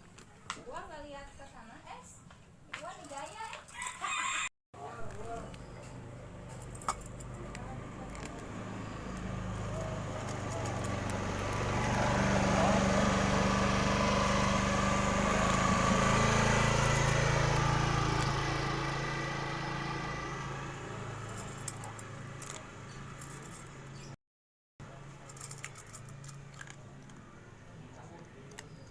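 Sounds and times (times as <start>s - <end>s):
engine humming: 4.8s - 24.1s.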